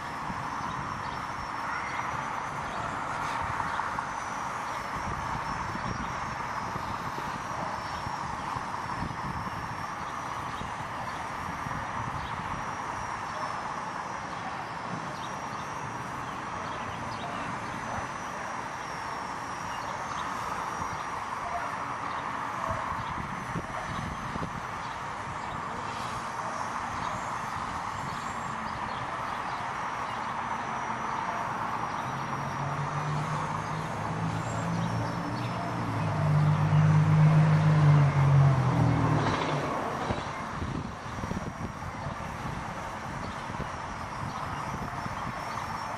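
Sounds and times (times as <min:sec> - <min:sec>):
low rotor hum: 0:00.0 - 0:45.9
rc helicopter motor whine: 0:00.0 - 0:45.9
wind on microphone: 0:04.8 - 0:12.7, 0:22.7 - 0:25.8, 0:36.9 - 0:45.9.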